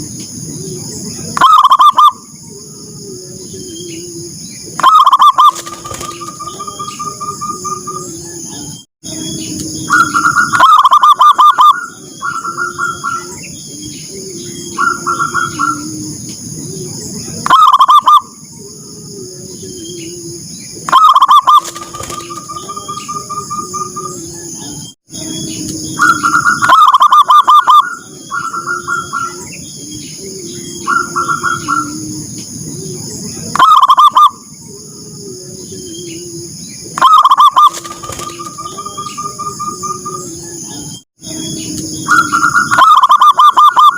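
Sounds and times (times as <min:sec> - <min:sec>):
doves cooing: 0:00.0 - 0:43.9.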